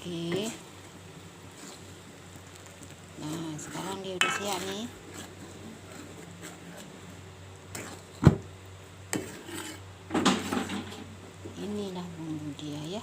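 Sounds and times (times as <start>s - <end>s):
scraping rustle: 1.4s - 7.1s, 7.7s - 8.3s, 9.1s - 11.1s.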